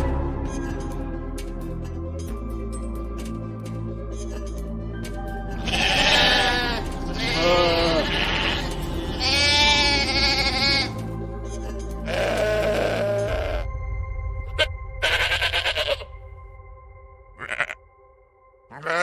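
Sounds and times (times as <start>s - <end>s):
background music: 0.0s - 19.0s
sheep bleating: 5.6s - 11.0s, 12.0s - 13.7s, 15.0s - 16.1s, 17.4s - 17.8s, 18.7s - 19.0s.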